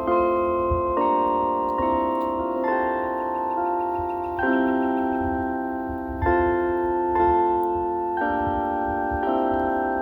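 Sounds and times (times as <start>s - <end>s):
church bells ringing: 0.0s - 10.0s.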